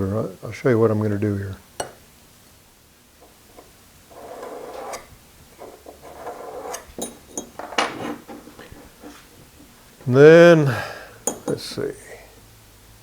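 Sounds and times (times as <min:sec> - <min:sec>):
steel scraping on workbench: 0:03.2 - 0:09.8.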